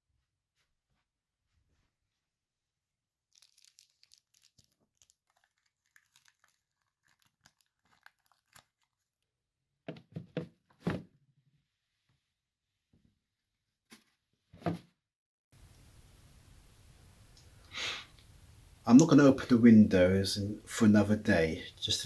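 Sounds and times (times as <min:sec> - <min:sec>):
packet tearing and crinkling: 0:03.3 - 0:09.2.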